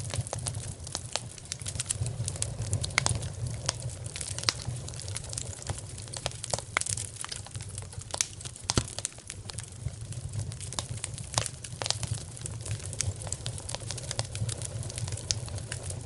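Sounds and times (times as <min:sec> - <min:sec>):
low fire rumble: 0:00.0 - 0:16.0
wood fire crackling: 0:00.0 - 0:16.0.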